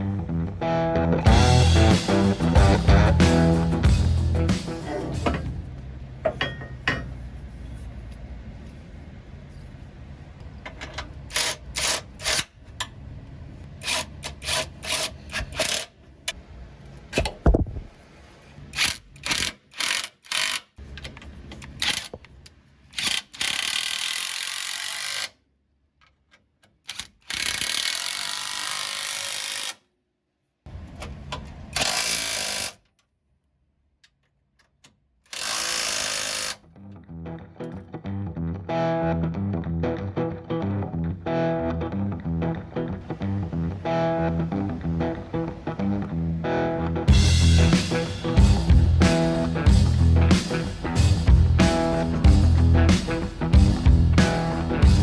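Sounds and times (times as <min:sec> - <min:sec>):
power tool bursts: 0:26.9 - 0:29.8, 0:31.8 - 0:32.8, 0:35.3 - 0:36.6.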